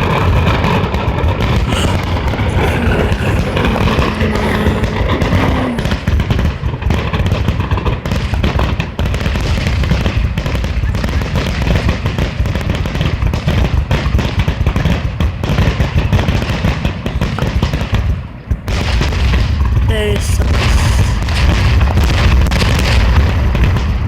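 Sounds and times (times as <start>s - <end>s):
fireworks bangs and crackles: 6.1s - 24.0s.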